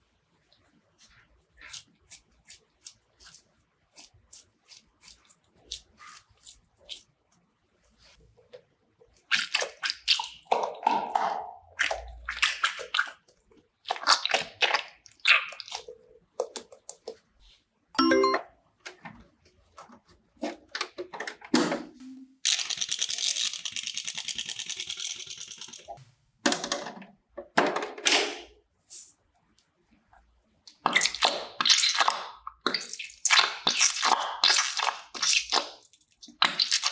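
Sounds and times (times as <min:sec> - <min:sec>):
slime squishing: 0:09.0 - 0:17.3, 0:30.7 - 0:36.9.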